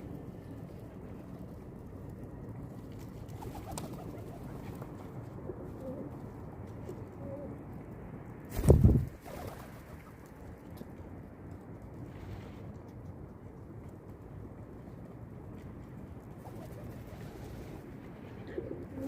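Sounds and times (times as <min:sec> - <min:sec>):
pigeons cooing: 0:05.4 - 0:06.2, 0:06.9 - 0:07.6, 0:16.4 - 0:19.0.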